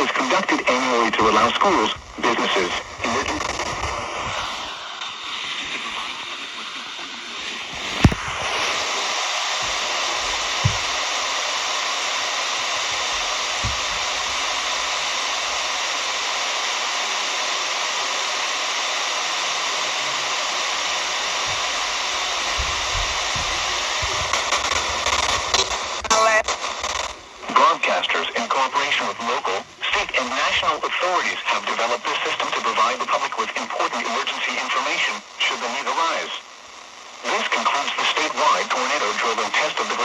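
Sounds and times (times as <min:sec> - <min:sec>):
radio static hiss: 0:00.0 - 0:40.0
faint low thumps: 0:01.2 - 0:04.8, 0:07.7 - 0:09.0, 0:09.6 - 0:11.4, 0:12.4 - 0:15.8, 0:20.9 - 0:26.3.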